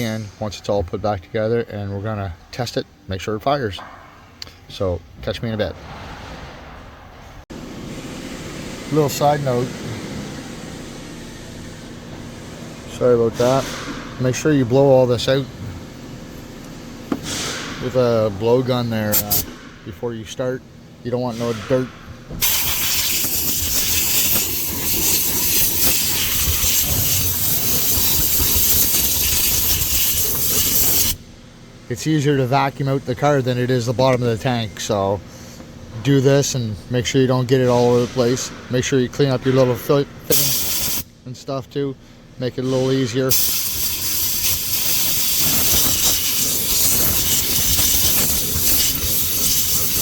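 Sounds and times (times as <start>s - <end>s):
air blowgun hissing: 22.4s - 31.2s, 40.3s - 41.0s, 43.3s - 50.0s
shop vacuum sucking debris: 22.4s - 31.2s, 43.3s - 50.0s.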